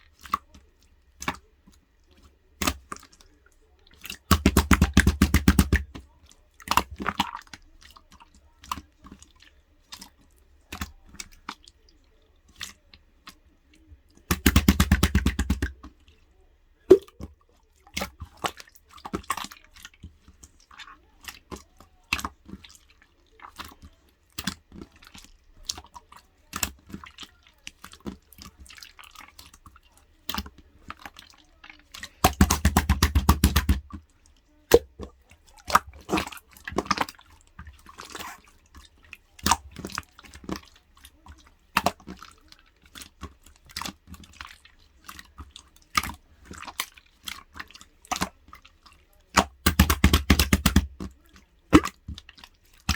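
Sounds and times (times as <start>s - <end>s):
slime squished by hand: 4.0s - 7.6s, 14.3s - 15.9s, 31.9s - 34.0s, 34.7s - 40.7s, 49.3s - 52.9s
slime air bubbles popping: 4.3s - 6.0s, 14.3s - 15.8s, 16.9s - 17.2s, 32.2s - 33.9s, 34.7s - 35.2s, 49.4s - 51.0s.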